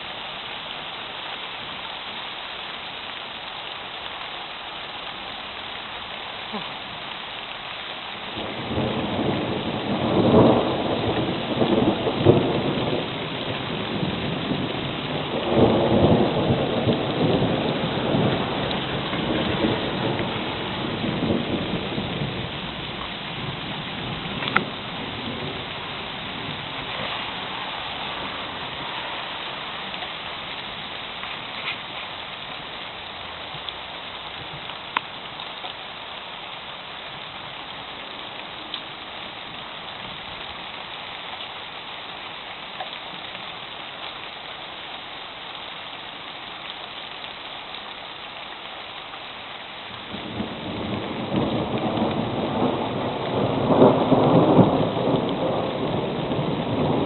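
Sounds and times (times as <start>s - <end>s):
steady rain: 0.0s - 57.0s
thunder rumbling: 8.2s - 35.2s, 50.0s - 57.0s.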